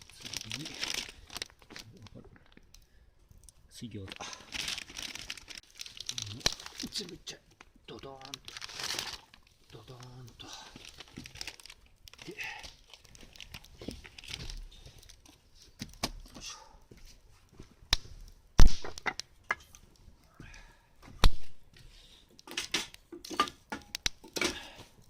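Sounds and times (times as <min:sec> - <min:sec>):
camp cookware clattering: 0:22.4 - 0:24.8.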